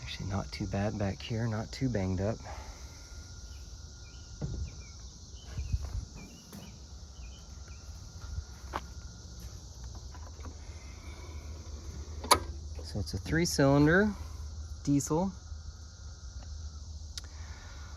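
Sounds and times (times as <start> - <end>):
high insect chorus: 0.0 - 17.9
footsteps on ground: 7.3 - 10.2.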